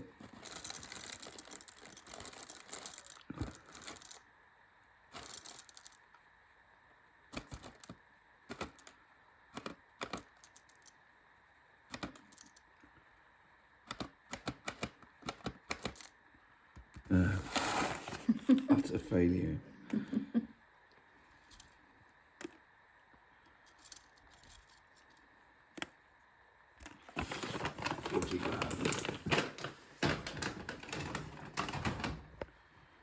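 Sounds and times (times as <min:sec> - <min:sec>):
coffee beans clicking and rattling: 0:00.2 - 0:04.2, 0:05.1 - 0:06.1, 0:07.4 - 0:08.9, 0:09.6 - 0:11.0, 0:12.0 - 0:12.6, 0:14.7 - 0:16.1.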